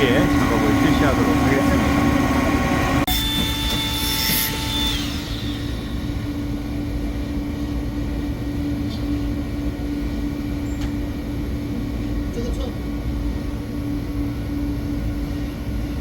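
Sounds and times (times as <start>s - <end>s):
high whine dropping in pitch: 0.0s - 8.7s
fan rumble and hum: 0.0s - 16.0s.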